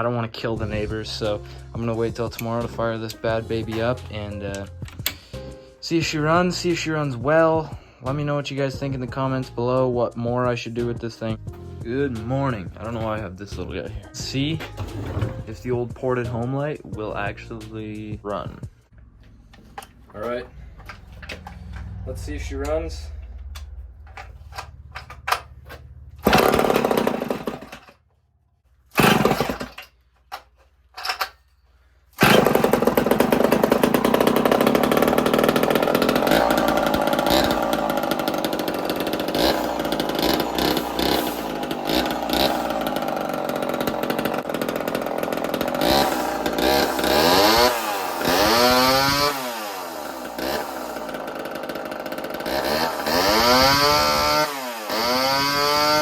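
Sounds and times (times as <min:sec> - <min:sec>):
chainsaw sputtering and revving: 0:21.4 - 0:23.8, 0:26.0 - 0:28.0, 0:28.9 - 0:29.8, 0:32.2 - 0:56.0.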